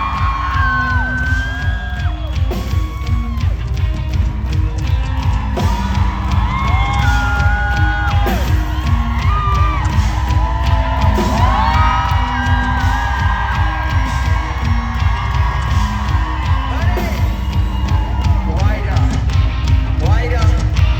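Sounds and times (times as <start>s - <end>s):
crowd whooping: 0.0s - 20.9s
live rock band: 0.0s - 20.9s.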